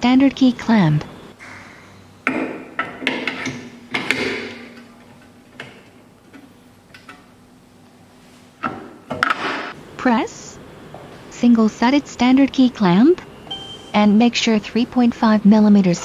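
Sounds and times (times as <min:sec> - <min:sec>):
faint steady hum: 0:00.0 - 0:16.0
metal clicks and knocks: 0:02.2 - 0:07.3.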